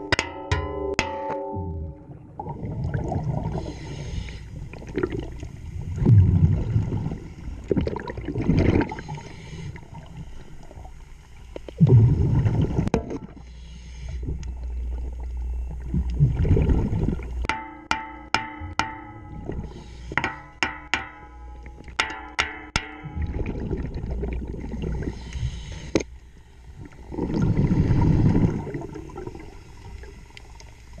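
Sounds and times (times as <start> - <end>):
underwater bubbles gurgling: 1.7 - 13.4, 14.2 - 17.5, 18.6 - 19.9, 23.0 - 31.0
steady low hum: 8.5 - 22.0.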